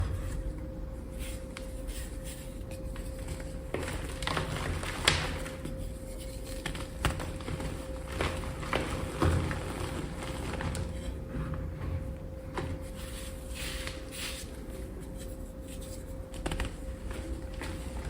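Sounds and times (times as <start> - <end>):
steady hum: 0.0 - 18.0.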